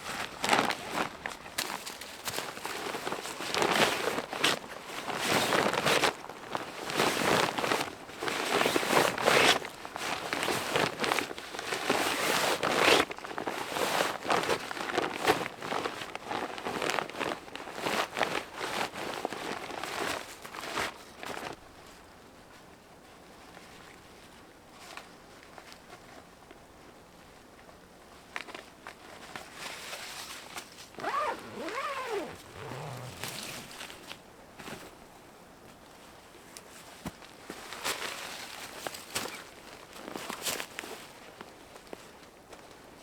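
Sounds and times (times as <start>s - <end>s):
rustling and crinkling handling noise: 28.1s - 35.0s.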